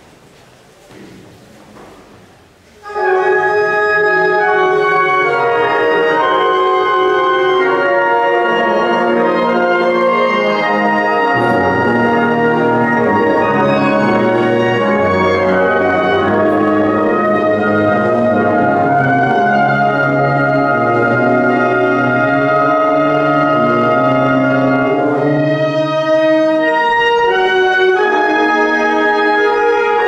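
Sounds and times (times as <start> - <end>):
low brass: 2.8 - 30.0
wind band playing a march: 2.8 - 30.0.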